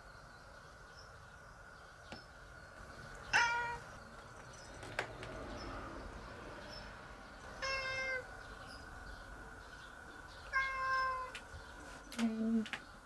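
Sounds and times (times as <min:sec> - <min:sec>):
cat meowing: 0:03.3 - 0:03.9, 0:07.6 - 0:08.3, 0:10.5 - 0:11.4.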